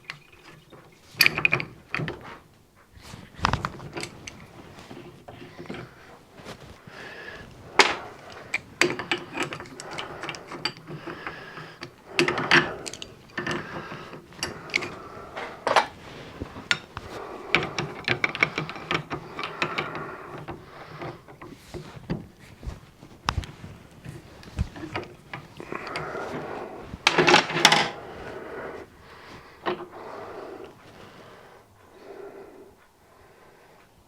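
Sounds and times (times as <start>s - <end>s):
small metal parts clinking: 7.8s - 15.0s.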